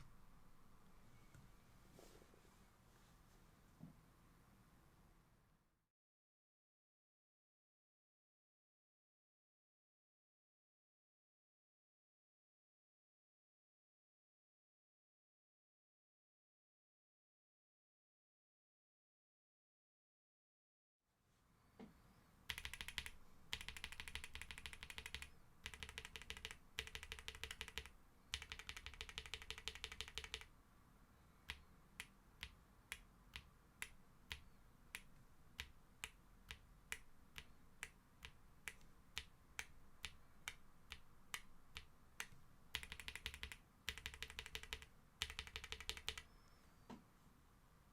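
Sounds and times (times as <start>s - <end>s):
mechanical keyboard typing: 22.5s - 30.5s, 38.2s - 46.3s.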